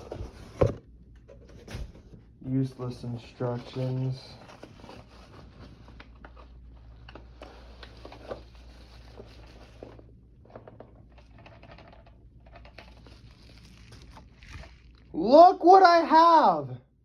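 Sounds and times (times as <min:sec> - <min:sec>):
packaging rustling and clicking: 0:03.6 - 0:15.1.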